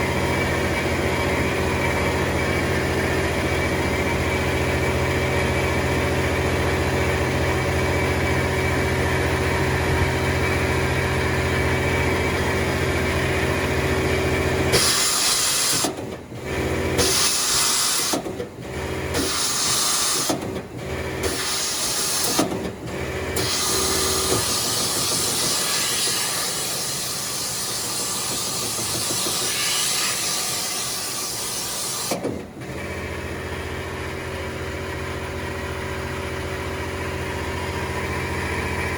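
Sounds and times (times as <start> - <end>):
lathe machine hum: 0.0 - 38.9
loud hiss: 23.4 - 32.2.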